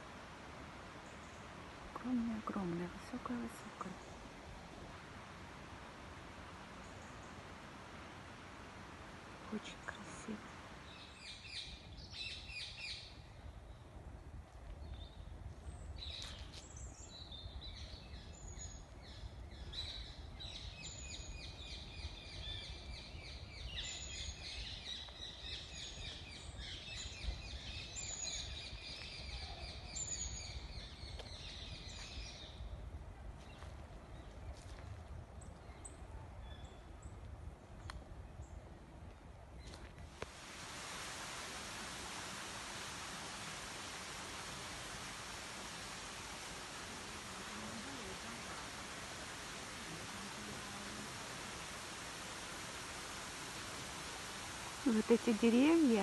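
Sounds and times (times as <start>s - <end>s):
songbirds chirping and trilling: 14.8s - 32.8s.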